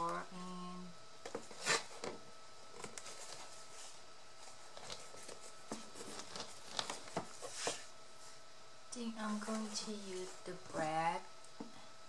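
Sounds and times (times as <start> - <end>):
paper and cardstock rustling: 1.3 - 8.4.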